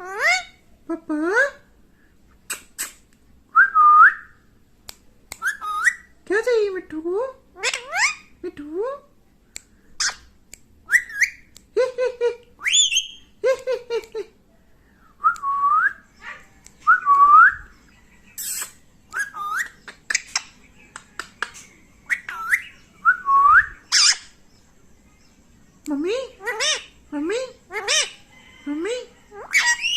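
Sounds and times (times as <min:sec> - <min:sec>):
parrot vocal calls: 0:00.0 - 0:00.6, 0:05.4 - 0:06.1, 0:07.5 - 0:08.3, 0:10.0 - 0:10.3, 0:10.9 - 0:11.5, 0:16.1 - 0:16.6, 0:18.1 - 0:22.8, 0:23.8 - 0:24.4, 0:26.2 - 0:29.9
parrot whistling: 0:05.4 - 0:06.1, 0:10.9 - 0:11.5, 0:18.4 - 0:19.8, 0:22.1 - 0:24.3.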